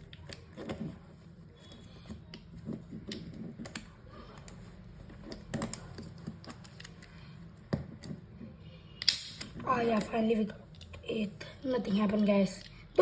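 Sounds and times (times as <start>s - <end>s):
sharp plastic snap: 9.0s - 9.6s.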